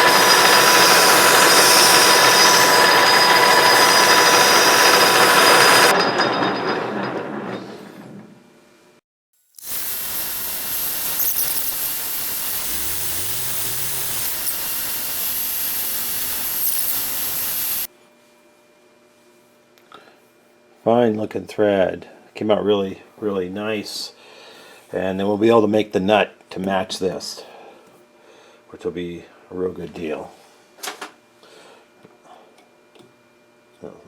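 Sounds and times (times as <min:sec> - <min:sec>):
metal lathe hissing: 0:00.0 - 0:05.9, 0:09.6 - 0:17.9.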